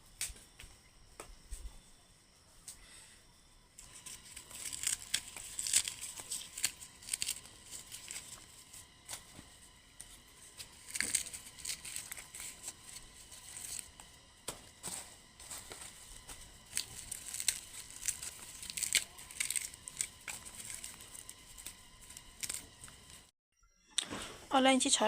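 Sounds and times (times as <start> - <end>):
dry plant material rustling: 3.8 - 23.3.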